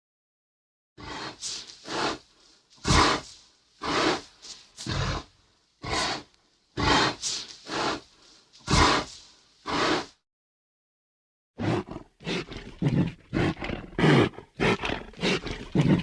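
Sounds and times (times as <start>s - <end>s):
monster snarls and grunts: 1.0s - 2.2s, 2.8s - 8.1s, 8.7s - 10.2s, 11.6s - 16.0s.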